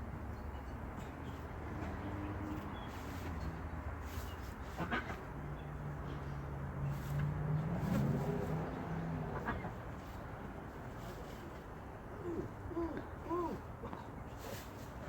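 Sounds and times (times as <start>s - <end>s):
low drawn-out cooing: 12.1s - 14.0s.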